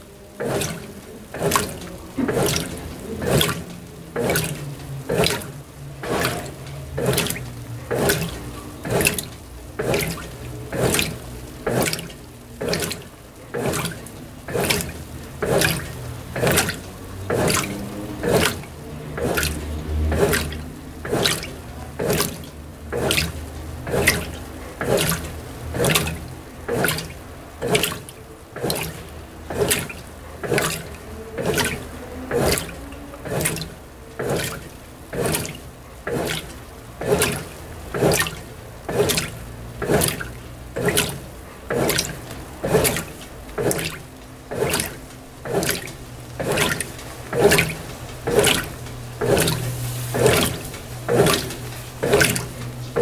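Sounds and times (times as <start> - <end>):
faint low motor hum: 0.0 - 53.0
water sloshing in washer tub: 0.0 - 53.0.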